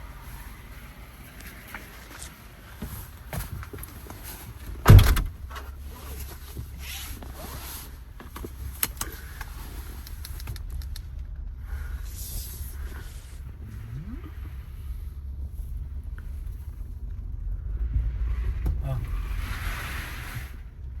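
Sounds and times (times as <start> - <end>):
low steady rumble: 0.0 - 21.0
vehicle door slamming shut: 4.8 - 5.6.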